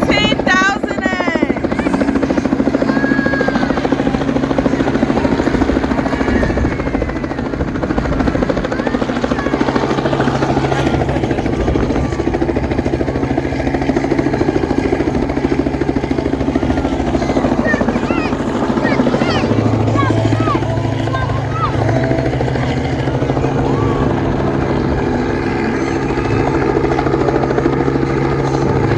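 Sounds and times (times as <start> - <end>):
helicopter rotor blades chopping: 0.0 - 28.9.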